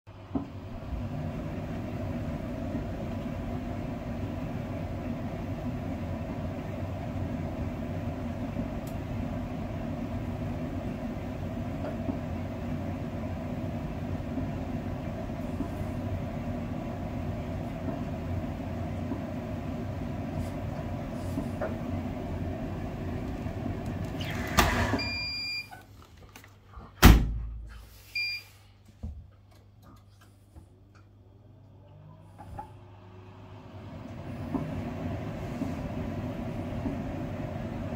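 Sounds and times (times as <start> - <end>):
tumble dryer running: 0.1 - 25.6, 32.8 - 37.9.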